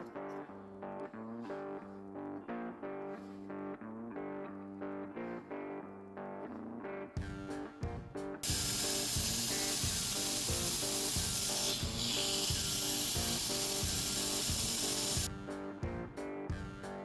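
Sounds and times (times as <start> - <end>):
background music with beat: 6.8 - 17.0
loud steady hiss: 8.4 - 15.3.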